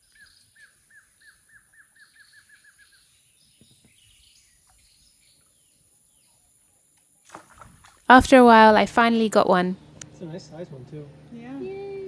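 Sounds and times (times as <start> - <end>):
faint high bird chirps: 0.0 - 6.5.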